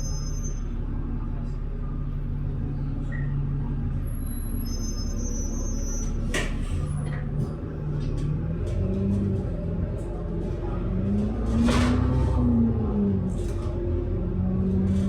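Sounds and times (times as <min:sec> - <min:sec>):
bus engine running: 0:00.0 - 0:15.0
road noise: 0:03.6 - 0:15.0.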